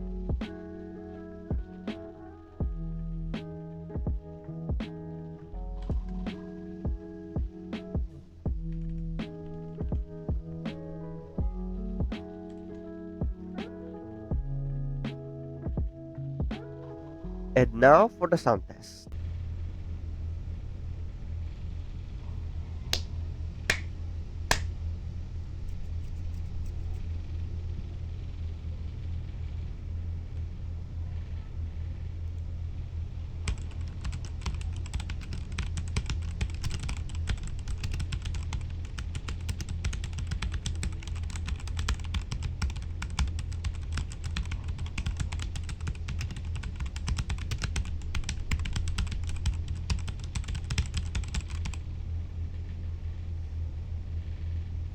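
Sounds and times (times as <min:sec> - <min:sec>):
low steady hum: 0:00.0 - 0:54.9
mechanical keyboard typing: 0:33.5 - 0:51.8.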